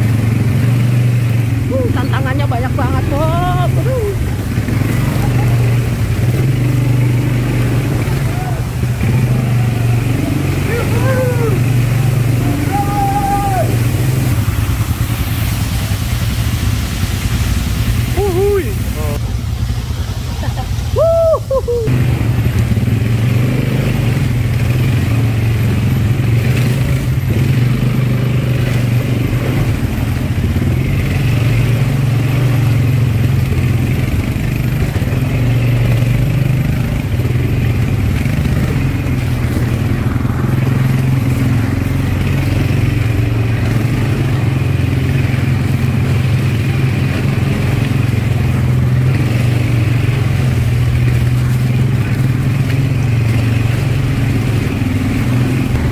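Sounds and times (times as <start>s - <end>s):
atv engine running: 0.0s - 55.9s.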